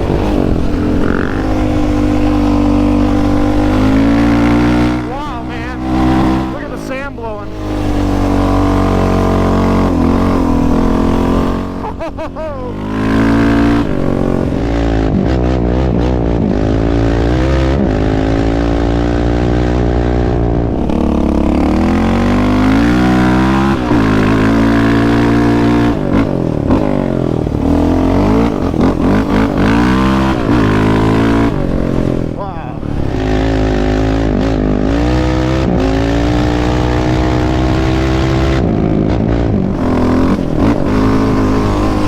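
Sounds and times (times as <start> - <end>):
quad engine revving: 0.0 - 42.0
wind on microphone: 35.6 - 42.0.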